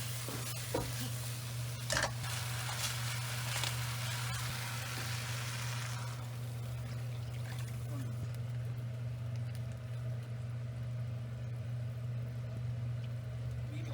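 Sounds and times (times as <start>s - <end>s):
food sizzling in frying pan: 0.0s - 7.0s.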